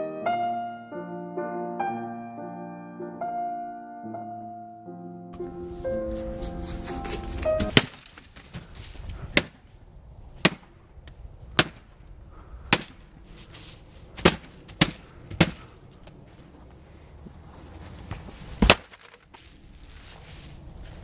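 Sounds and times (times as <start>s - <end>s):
sharp impacts: 7.2s - 9.7s, 10.4s - 10.9s, 11.5s - 13.2s, 14.1s - 15.9s.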